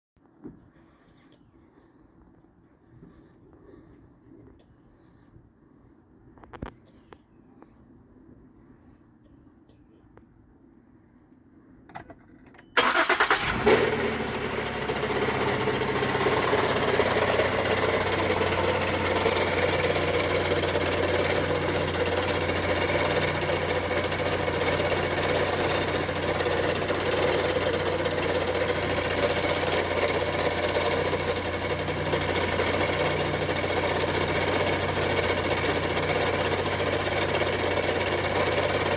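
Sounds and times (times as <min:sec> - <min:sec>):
car engine starting and running: 0:11.9 - 0:38.9.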